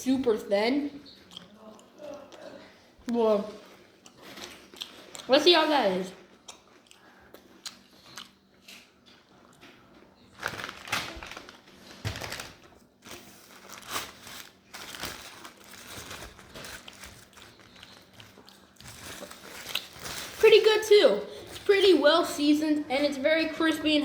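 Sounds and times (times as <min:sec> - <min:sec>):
person chewing crispy food: 0:03.6 - 0:05.3, 0:06.2 - 0:20.4.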